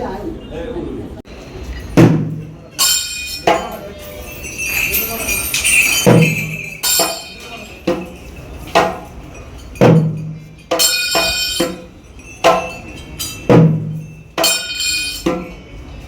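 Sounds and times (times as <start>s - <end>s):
cymbals clashing: 1.3s - 16.0s
loud drum strikes: 2.0s - 3.8s, 5.9s - 9.2s, 9.8s - 12.8s, 13.5s - 15.6s.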